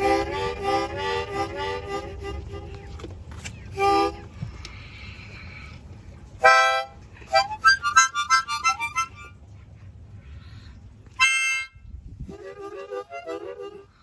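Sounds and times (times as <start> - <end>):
harmonica playing: 0.0 - 3.0, 3.7 - 4.3, 6.4 - 9.4, 11.1 - 14.0.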